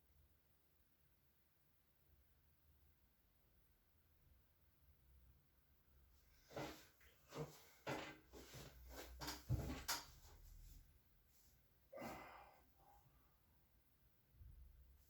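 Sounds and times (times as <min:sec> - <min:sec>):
rustling against body and table: 0:06.4 - 0:11.6
breathy exhale: 0:11.9 - 0:13.0.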